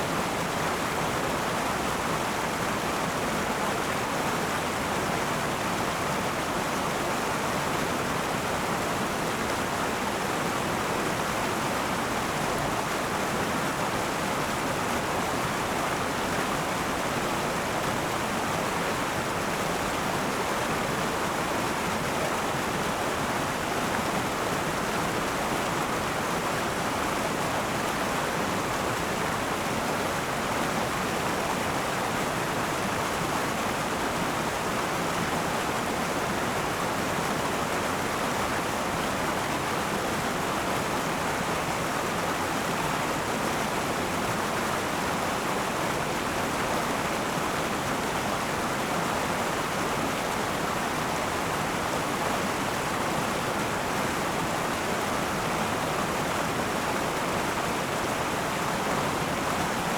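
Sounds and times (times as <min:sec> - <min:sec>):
river water rushing over rocks: 0:00.0 - 0:59.9.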